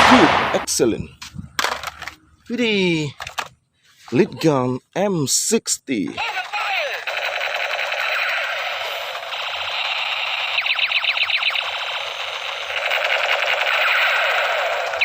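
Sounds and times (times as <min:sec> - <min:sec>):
toy gun buzzing rattle: 0:07.0 - 0:15.0.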